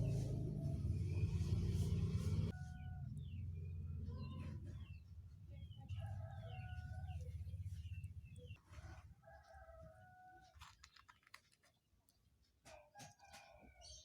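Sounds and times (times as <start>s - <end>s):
drawn-out rooster-like call: 0.0s - 3.6s, 5.8s - 8.0s, 8.6s - 10.9s.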